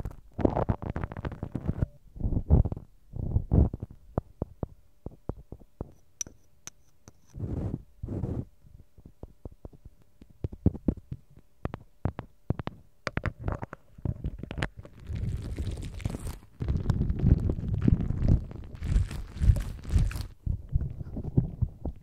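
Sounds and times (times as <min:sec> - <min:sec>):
rubbing on microphone: 0:00.0 - 0:06.0, 0:07.1 - 0:09.1, 0:13.4 - 0:22.0.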